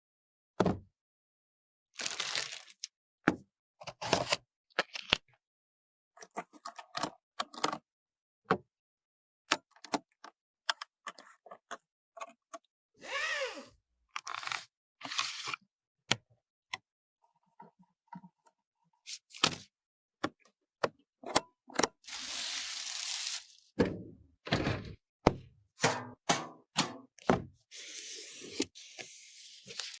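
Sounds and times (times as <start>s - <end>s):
packaging rustling and tearing: 2.0s - 2.9s, 22.1s - 23.6s.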